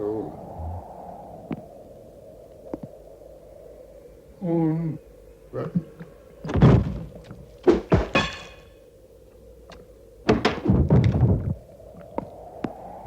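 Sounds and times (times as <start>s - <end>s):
heavy thuds and knocks: 6.5s - 8.6s, 10.3s - 11.6s.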